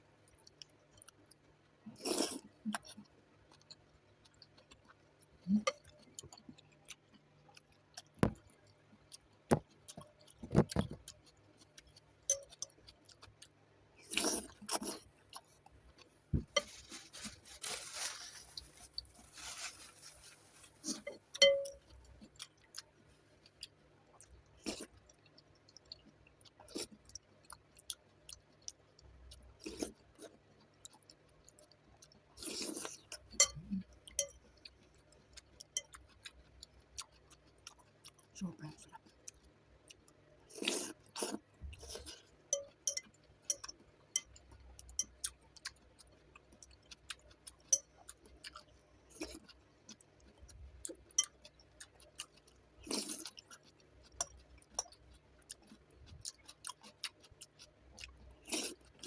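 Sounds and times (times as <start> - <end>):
chewing noodles: 0.3 - 59.0.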